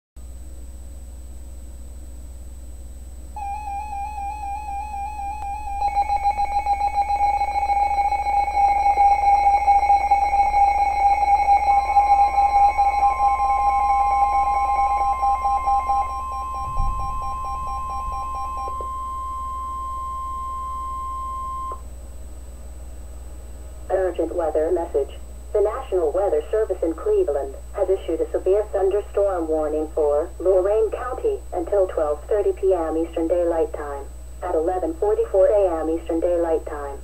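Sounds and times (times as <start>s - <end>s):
warbling electronic alert tone: 3.4s - 21.8s
steady alarm tone: 3.4s - 21.9s.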